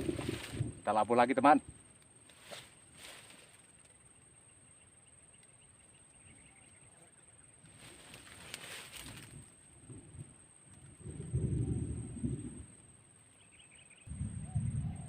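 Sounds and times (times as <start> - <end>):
soft rustles: 0.0 - 0.8, 2.3 - 4.0, 7.6 - 9.5.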